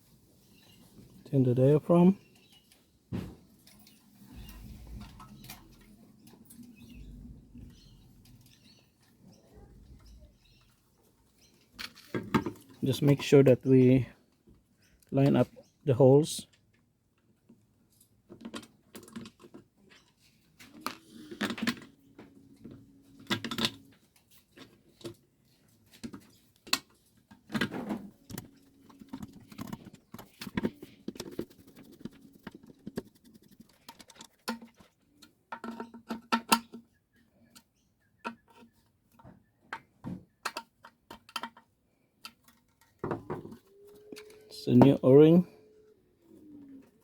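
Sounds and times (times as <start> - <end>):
small parts clicking and tapping: 25.9 - 36.9, 39.7 - 44.5.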